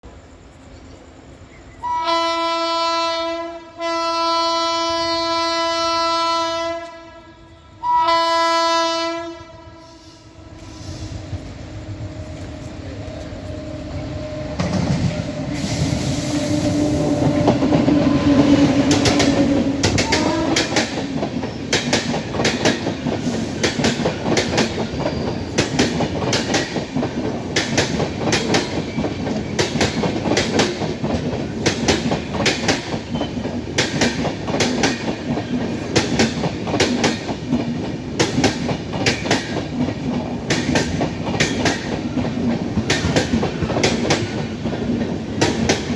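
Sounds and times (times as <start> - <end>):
train passing at speed: 0.0 - 45.9
wheels clacking over rail joints: 16.8 - 45.9.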